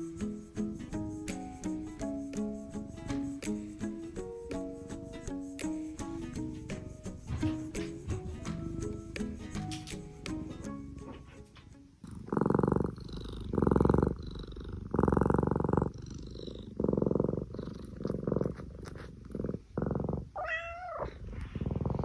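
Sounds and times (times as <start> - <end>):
cat purring: 0.0 - 22.0
cat meowing: 20.4 - 21.2.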